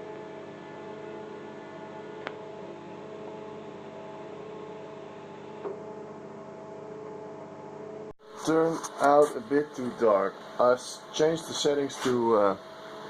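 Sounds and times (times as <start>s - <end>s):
welding arc humming: 8.3s - 13.0s.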